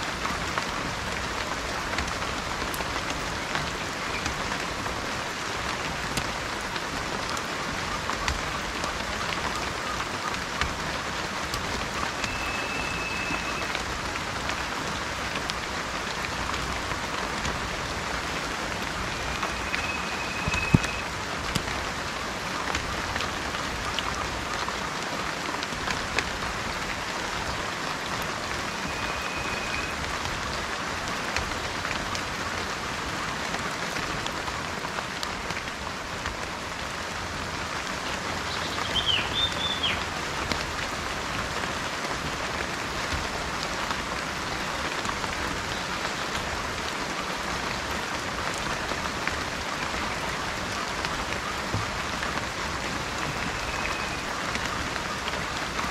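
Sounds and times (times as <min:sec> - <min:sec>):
raindrop ticks: 0:00.0 - 0:55.9
steady rain falling: 0:00.0 - 0:55.9
bird whistling: 0:12.2 - 0:13.7, 0:19.2 - 0:21.0, 0:28.9 - 0:30.0, 0:38.8 - 0:40.0, 0:53.5 - 0:54.2.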